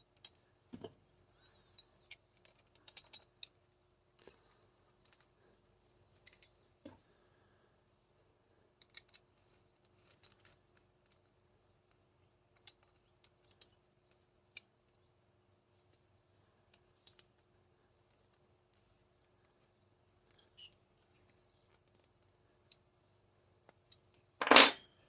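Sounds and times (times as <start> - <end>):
small clicks of pistol parts: 1.7 - 3.6, 6.2 - 6.6, 8.8 - 11.3, 11.9 - 15.0, 16.7 - 17.5, 21.7 - 22.8.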